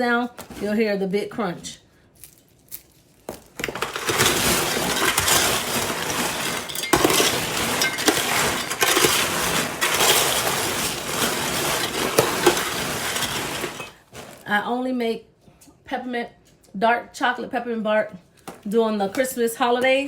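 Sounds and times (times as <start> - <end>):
popcorn crunching and crackling: 2.2 - 14.6.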